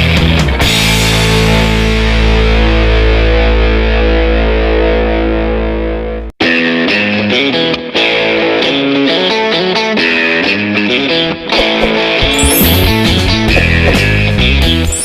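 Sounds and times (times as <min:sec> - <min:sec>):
rock music with distorted guitar: 0:00.0 - 0:15.0.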